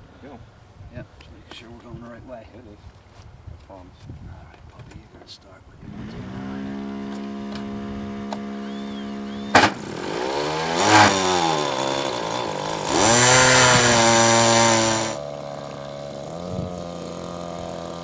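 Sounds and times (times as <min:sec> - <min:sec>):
model plane engine revving: 0:05.8 - 0:18.0
sharp click: 0:09.5 - 0:09.9.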